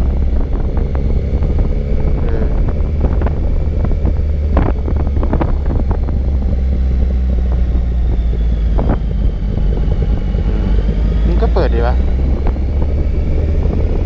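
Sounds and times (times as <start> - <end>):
motorcycle engine running: 0.0 - 14.0
wind buffeting microphone: 0.0 - 14.0.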